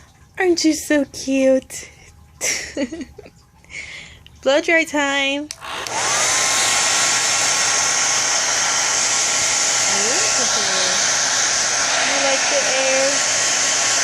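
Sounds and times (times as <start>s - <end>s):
hair dryer running: 5.5s - 14.0s.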